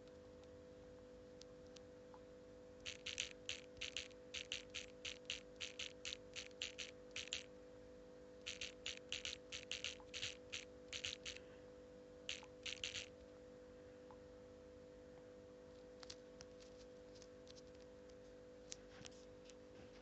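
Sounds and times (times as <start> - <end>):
faint steady hum: 0.0 - 20.0
phone keyboard clicks: 2.9 - 7.5, 8.4 - 11.4, 12.3 - 13.1.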